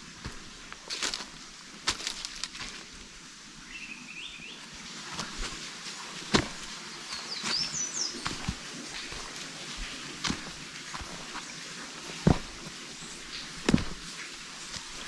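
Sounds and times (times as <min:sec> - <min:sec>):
footsteps crunching on dirt trail: 0:00.0 - 0:03.1, 0:05.0 - 0:15.0
small bird chirping: 0:07.0 - 0:08.5.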